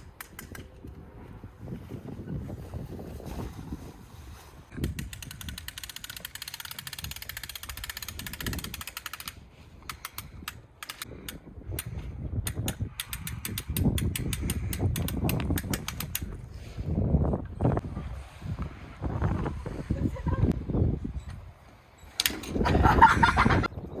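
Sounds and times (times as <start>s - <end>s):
wind rumble on microphone: 0.0s - 24.0s
umbrella crank ratchet clicking: 4.8s - 16.4s.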